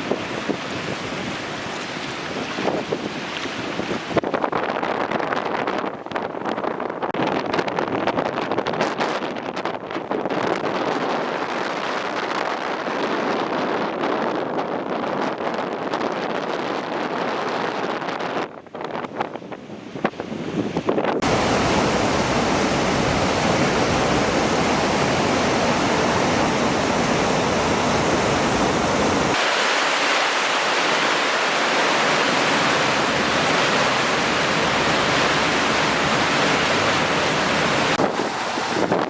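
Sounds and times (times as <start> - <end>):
floodwater rushing: 0.0 - 4.2, 21.2 - 39.0.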